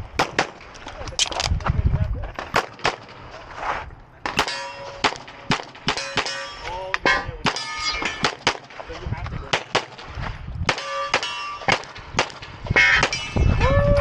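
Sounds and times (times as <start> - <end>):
rapid pistol fire: 0.2 - 0.7, 4.3 - 6.3
steel targets ringing: 4.4 - 8.4, 10.7 - 12.0, 12.8 - 13.6.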